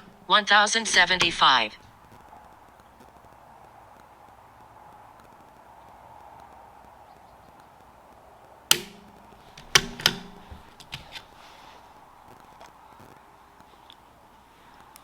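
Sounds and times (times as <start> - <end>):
rifle bolt metallic clacks: 0.0 - 1.9, 8.7 - 11.4.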